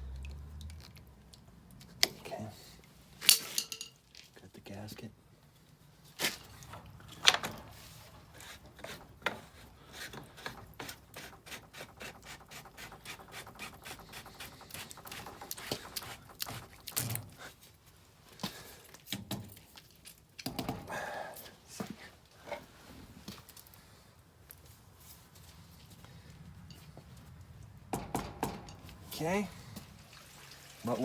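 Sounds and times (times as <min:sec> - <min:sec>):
tools clicking and tapping: 0:03.3 - 0:04.0, 0:06.7 - 0:17.5, 0:27.9 - 0:29.0.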